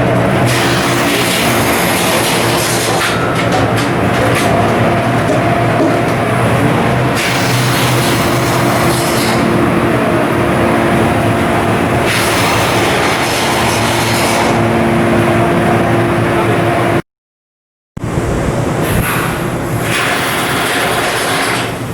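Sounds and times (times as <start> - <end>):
diesel engine roar: 0.0 - 17.0.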